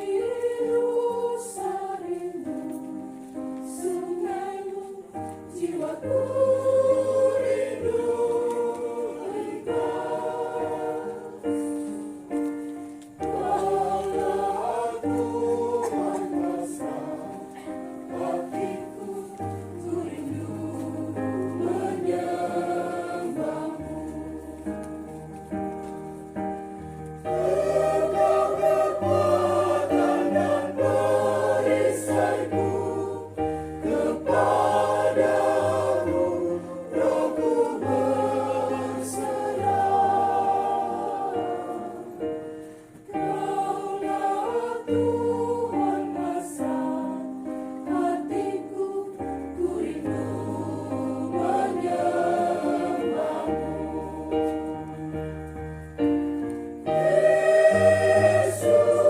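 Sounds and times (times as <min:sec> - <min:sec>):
choir singing a hymn: 0:00.0 - 0:59.0.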